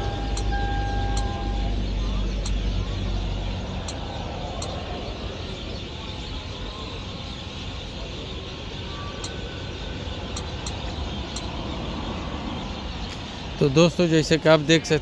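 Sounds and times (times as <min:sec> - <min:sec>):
motor vehicle rumble: 0:00.0 - 0:15.0.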